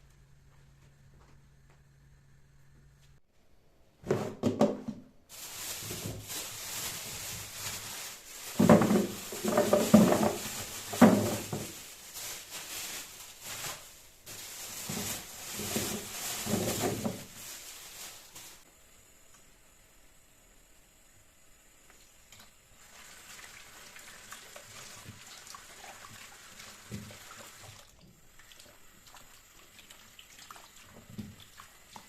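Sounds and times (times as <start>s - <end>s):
household items knocking and clattering: 4.0s - 5.1s, 8.5s - 11.8s, 14.8s - 17.4s.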